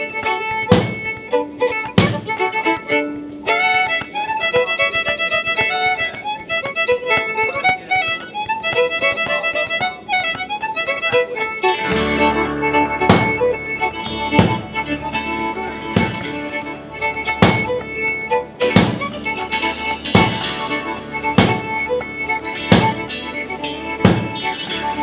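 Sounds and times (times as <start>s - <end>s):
fiddle music: 0.0s - 25.0s
sharp knocks: 0.2s - 3.2s, 11.1s - 25.0s.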